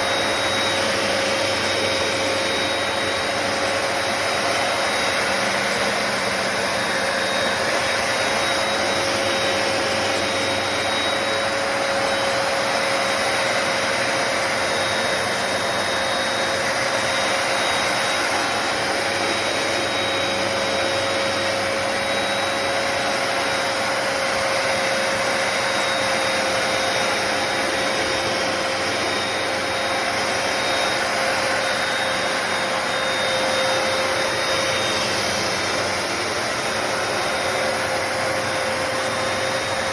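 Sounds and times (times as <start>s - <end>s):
carpet cleaner motor whining: 0.0s - 39.9s.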